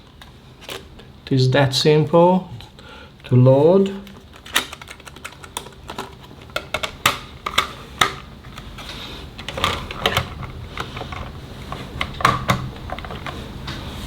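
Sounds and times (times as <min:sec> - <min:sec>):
plastic cassette clicks and taps: 0:04.3 - 0:08.7.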